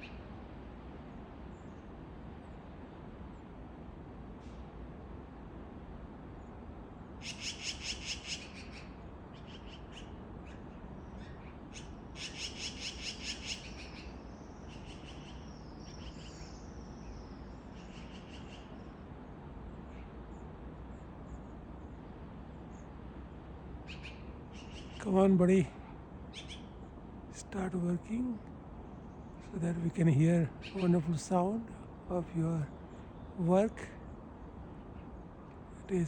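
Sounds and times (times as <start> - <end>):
low background hiss: 0.0 - 36.0
bird chirps: 7.2 - 18.9.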